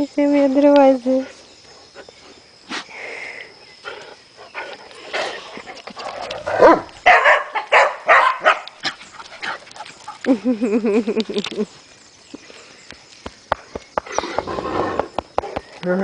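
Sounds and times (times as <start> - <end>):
dogs play-fighting scuffling: 4.0 - 7.1, 8.4 - 10.3
dogs barking loudly: 5.1 - 10.2.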